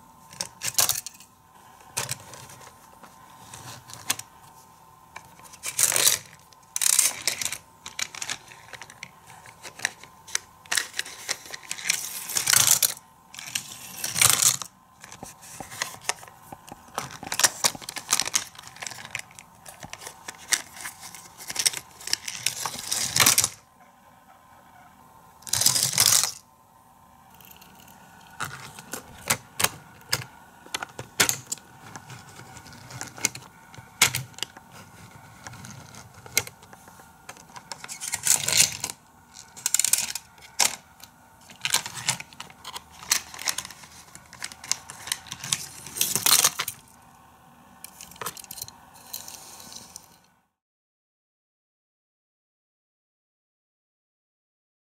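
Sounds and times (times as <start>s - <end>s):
toy cars rolling and rattling: 0.3s - 1.2s, 5.2s - 16.3s, 16.9s - 23.6s, 25.4s - 26.4s, 27.3s - 47.0s, 47.8s - 50.3s
toy cars clattering: 0.4s - 1.3s, 5.2s - 23.6s, 25.4s - 26.4s, 27.3s - 47.0s, 47.8s - 50.2s.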